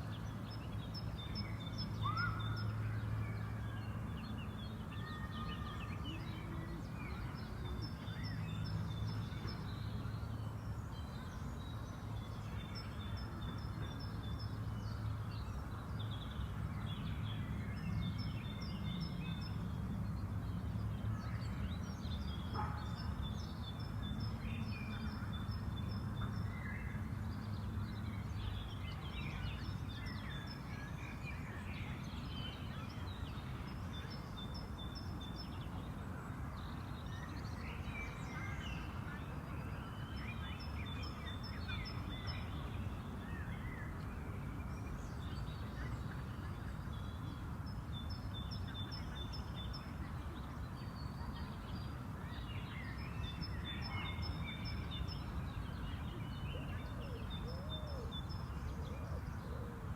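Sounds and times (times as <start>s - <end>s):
birds singing and calling: 0.0s - 19.6s, 36.6s - 59.9s.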